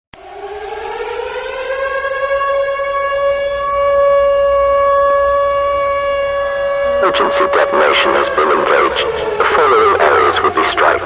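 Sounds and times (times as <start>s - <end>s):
civil defense siren winding up: 0.1s - 11.0s.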